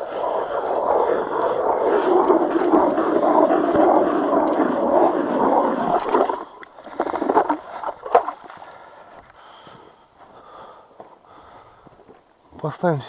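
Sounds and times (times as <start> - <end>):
slush and water splashing: 3.0 - 8.7.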